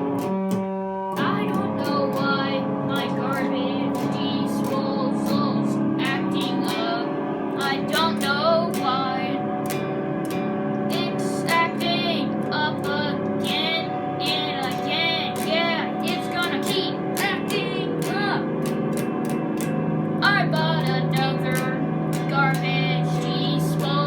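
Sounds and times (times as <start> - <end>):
guitar accompaniment: 0.0 - 24.0
boy singing: 1.2 - 9.8, 10.9 - 18.8, 20.2 - 24.0.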